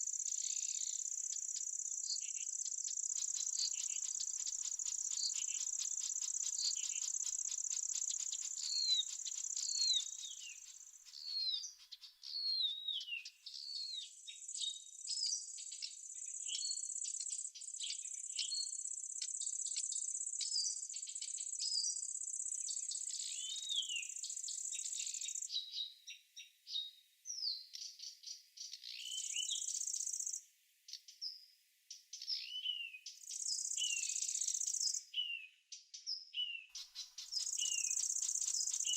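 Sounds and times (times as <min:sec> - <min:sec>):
small birds chirping: 0:00.0 - 0:38.9
high-pitched insect trill: 0:02.9 - 0:11.2, 0:37.2 - 0:38.9.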